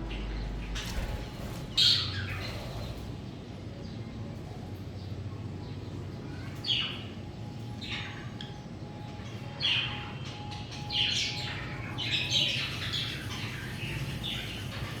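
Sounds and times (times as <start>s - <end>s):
budgerigars chirping and squawking: 0.7s - 3.1s, 9.6s - 15.0s.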